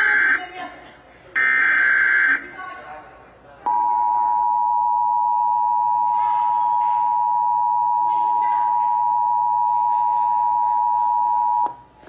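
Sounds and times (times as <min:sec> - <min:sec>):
faint voices: 0:07.8 - 0:12.0.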